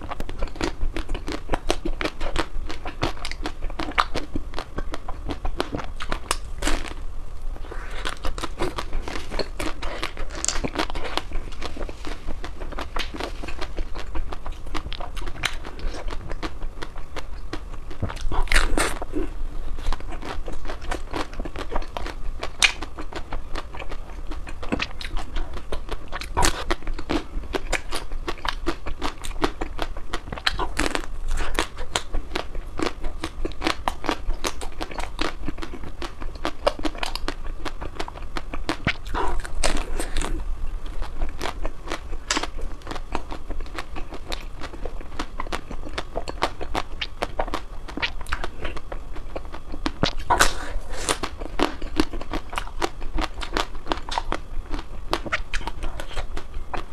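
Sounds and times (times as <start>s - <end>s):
chewing ice cream: 0.0s - 56.9s.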